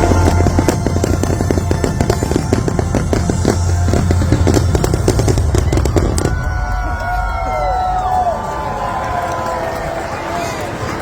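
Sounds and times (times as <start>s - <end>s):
loud show music: 0.0s - 6.5s
fireworks bangs and crackles: 0.0s - 10.6s.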